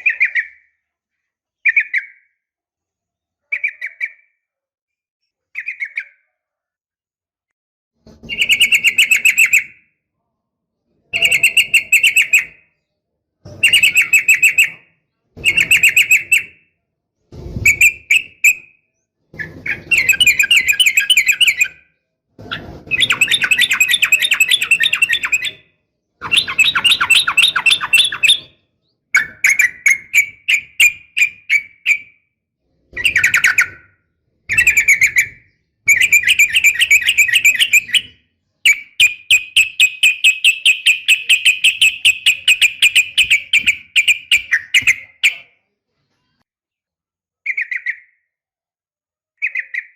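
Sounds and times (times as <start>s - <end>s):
bird chattering calls: 26.2s - 28.4s.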